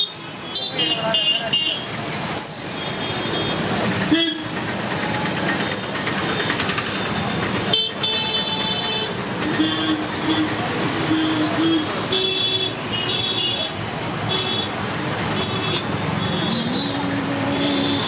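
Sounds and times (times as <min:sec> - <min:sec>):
road traffic: 0:00.0 - 0:18.0
vehicle horns honking: 0:07.7 - 0:18.0.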